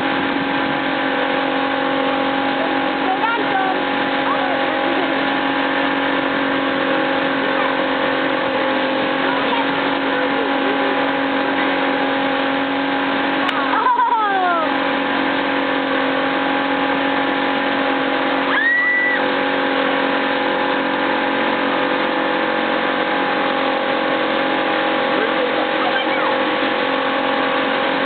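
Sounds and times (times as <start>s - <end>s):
motorboat engine drone: 0.0s - 28.0s
water and wind rushing: 0.0s - 28.0s
rising whistle: 18.5s - 19.3s
short falling cry: 18.5s - 19.3s.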